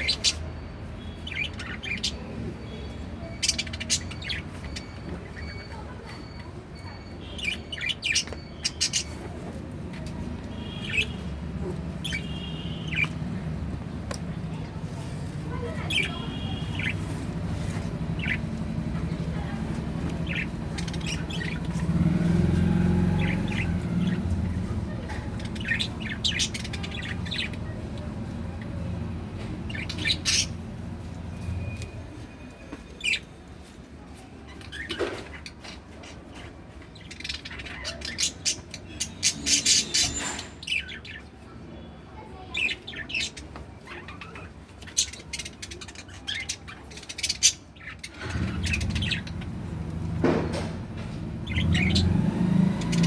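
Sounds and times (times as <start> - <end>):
budgie chirping and squawking: 51.4 - 53.0.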